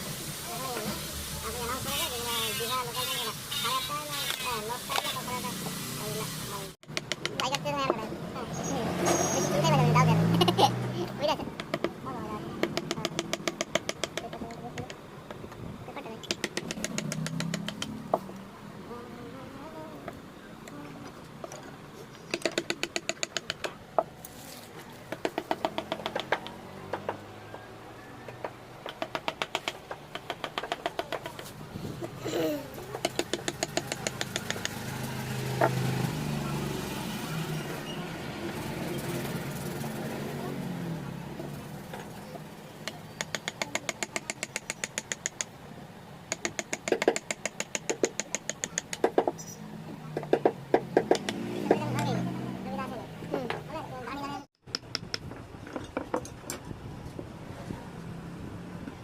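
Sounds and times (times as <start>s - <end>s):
rapid sharp taps: 6.8s - 7.6s, 16.2s - 18.0s, 33.0s - 34.8s, 46.3s - 49.3s
mallet tapping chisel into wood: 6.9s - 7.5s, 12.6s - 15.0s, 16.2s - 17.9s, 22.3s - 23.7s, 25.1s - 27.2s, 28.8s - 31.4s, 33.0s - 34.8s, 42.8s - 45.5s, 46.3s - 49.3s.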